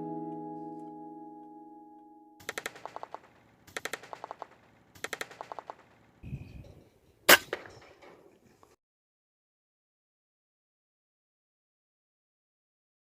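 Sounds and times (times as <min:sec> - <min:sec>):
air rifle shot: 0:02.4 - 0:05.9, 0:07.3 - 0:08.0
rapid ticking: 0:02.4 - 0:06.2.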